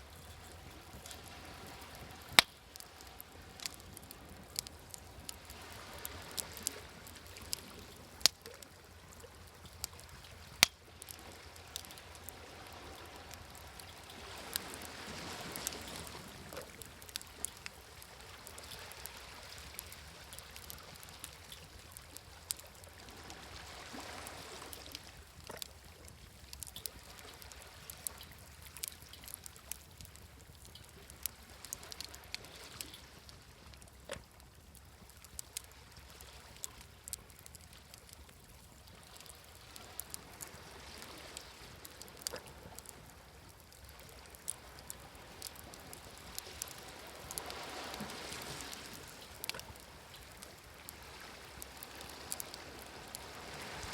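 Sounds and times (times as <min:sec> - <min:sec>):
sea waves washing: 0:00.0 - 0:25.7, 0:39.0 - 0:53.9
campfire crackling and popping: 0:00.0 - 0:53.9.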